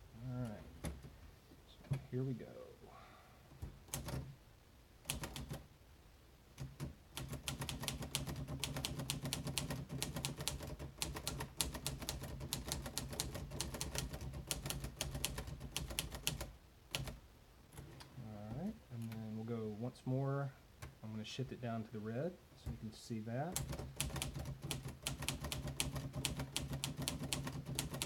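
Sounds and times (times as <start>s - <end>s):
manual typewriter typing: 3.9s - 4.3s, 5.1s - 5.6s, 6.6s - 17.2s, 23.5s - 28.0s.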